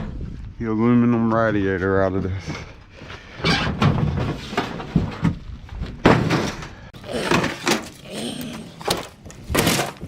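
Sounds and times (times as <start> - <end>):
scrap metal clanking and thudding: 3.5 - 8.0.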